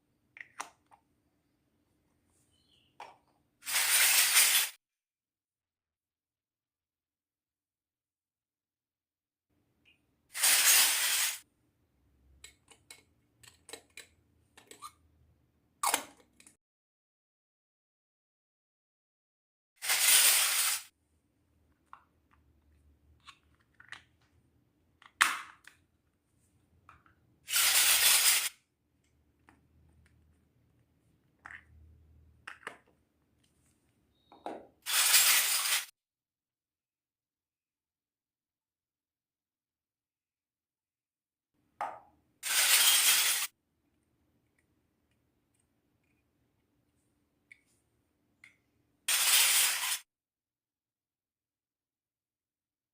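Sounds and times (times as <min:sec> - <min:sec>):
toy kitchen pieces clinking: 0:42.4 - 0:43.5.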